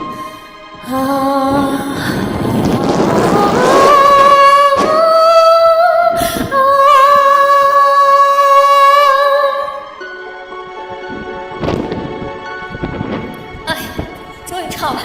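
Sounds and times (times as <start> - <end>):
woman singing unaccompanied: 0.8 - 9.9.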